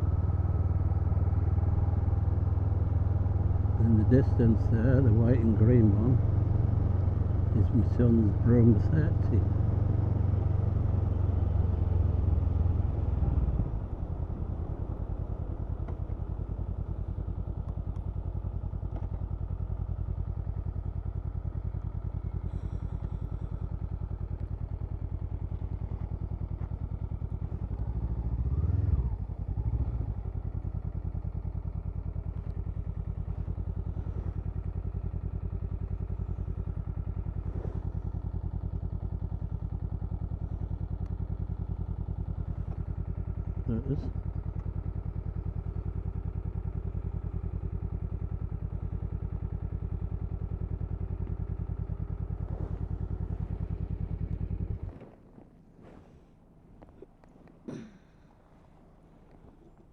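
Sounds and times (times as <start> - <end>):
motorcycle engine idling: 0.0 - 59.9
engine revving: 27.3 - 30.2.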